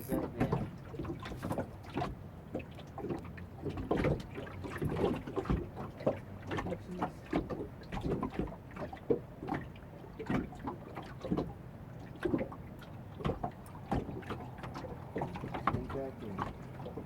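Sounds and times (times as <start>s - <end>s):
water slapping against boat hull: 0.0s - 17.0s.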